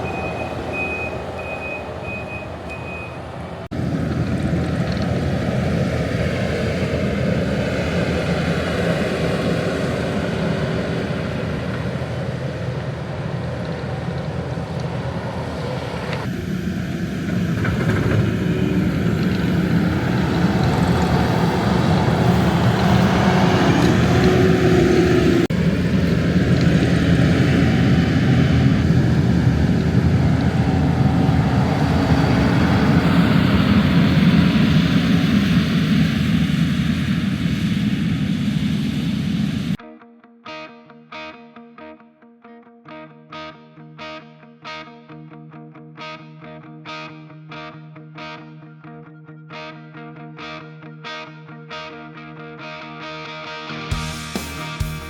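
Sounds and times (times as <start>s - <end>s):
reversing beeper: 0.0s - 3.4s
heavy diesel machinery running: 0.0s - 39.8s.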